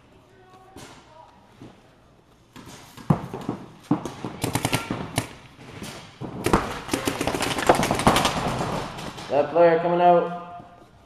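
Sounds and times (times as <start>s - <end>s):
paintball markers firing: 6.4s - 9.4s.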